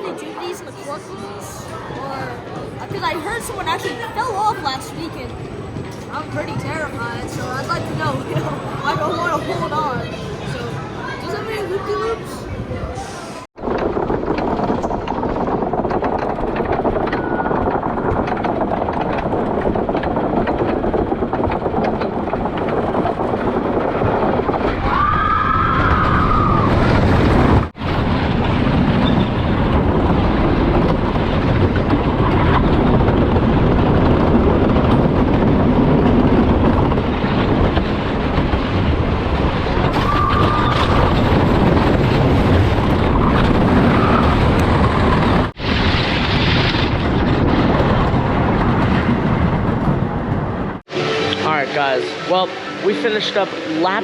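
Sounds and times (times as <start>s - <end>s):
roller coaster rattling on track: 0.0s - 50.8s
wind on microphone: 12.4s - 50.9s.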